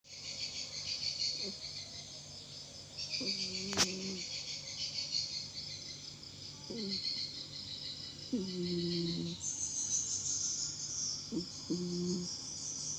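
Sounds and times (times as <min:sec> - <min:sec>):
crickets chirring: 0:00.1 - 0:12.9
cat snoring: 0:03.3 - 0:04.2, 0:06.7 - 0:07.0, 0:08.3 - 0:09.4, 0:11.3 - 0:12.4.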